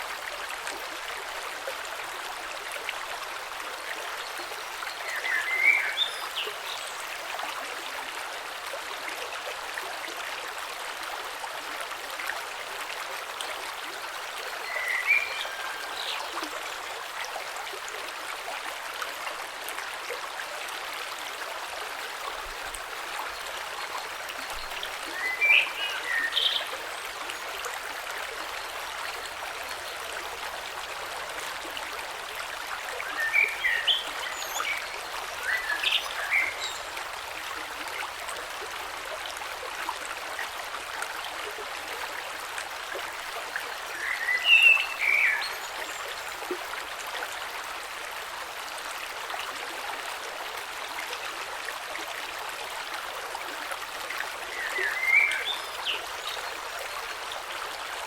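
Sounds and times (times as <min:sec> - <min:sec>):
creek flowing over stones: 0:00.0 - 0:58.0.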